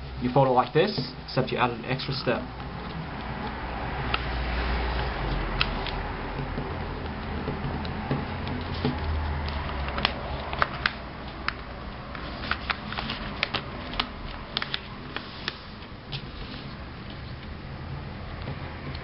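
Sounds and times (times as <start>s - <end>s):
low steady hum: 0.0s - 19.0s
paper being folded and creased: 4.9s - 6.0s, 8.5s - 17.4s.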